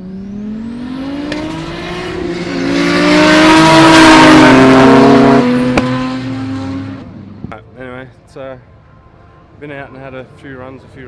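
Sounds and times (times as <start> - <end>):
race car engines at full throttle: 0.0 - 7.6.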